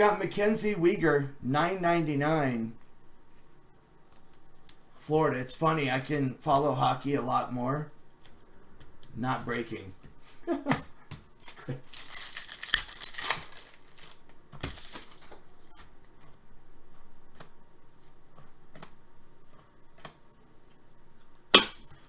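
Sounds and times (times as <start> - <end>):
wrapper crinkling and tearing: 11.4 - 15.7.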